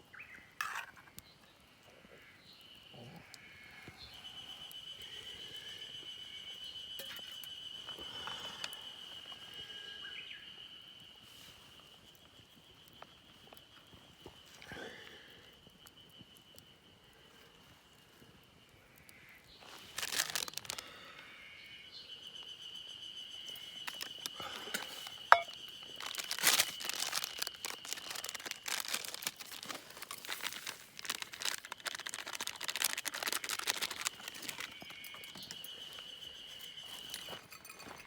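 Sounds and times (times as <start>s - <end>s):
rustling and crinkling: 19.6s - 20.8s, 23.5s - 36.1s
sharp clicks and rattles: 25.2s - 35.6s.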